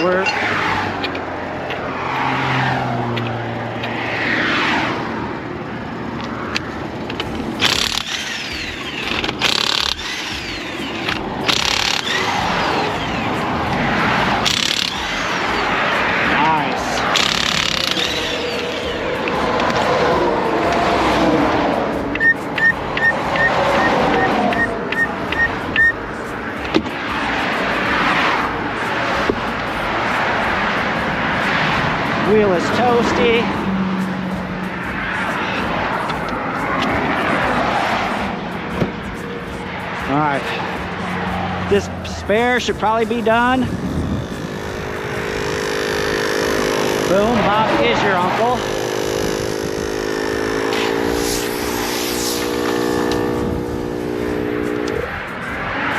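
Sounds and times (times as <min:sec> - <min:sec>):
high beeps: 0:00.0 - 0:00.4, 0:22.2 - 0:26.0
highway traffic passing: 0:00.0 - 0:55.9
impact wrench bursts: 0:07.0 - 0:19.9, 0:42.3 - 0:55.1.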